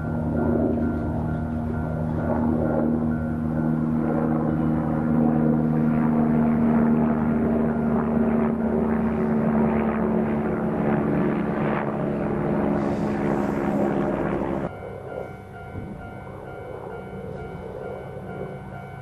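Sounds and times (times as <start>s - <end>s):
diesel engine drone: 0.0s - 19.0s.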